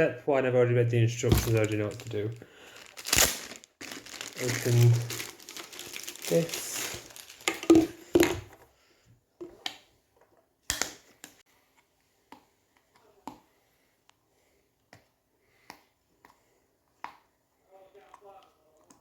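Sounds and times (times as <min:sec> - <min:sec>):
packaging rustling and knocking: 0:01.2 - 0:08.6.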